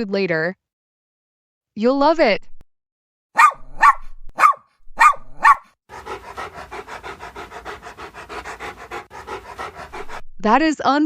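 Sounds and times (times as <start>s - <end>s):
dog yapping: 3.4s - 10.2s
dog panting: 5.5s - 10.3s.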